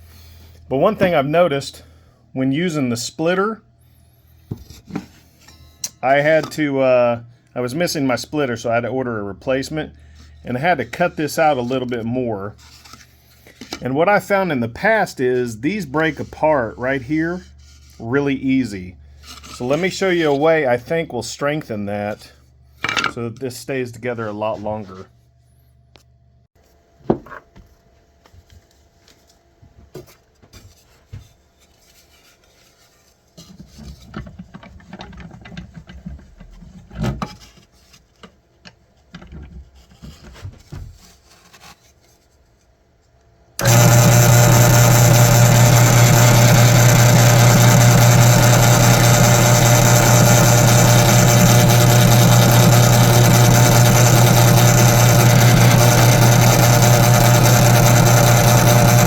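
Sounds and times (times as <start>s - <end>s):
woodworking power tool running: 43.6s - 59.0s.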